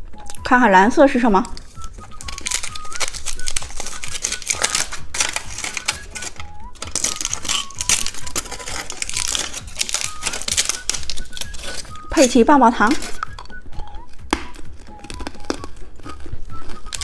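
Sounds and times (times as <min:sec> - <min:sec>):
plastic candy wrapper crackling: 0:00.0 - 0:17.0.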